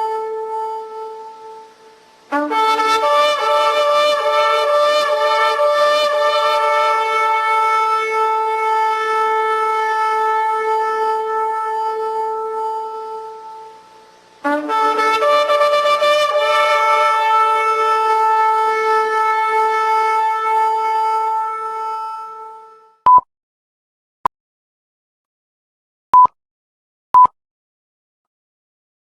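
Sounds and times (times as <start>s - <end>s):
long horn blasts: 0.0s - 23.0s.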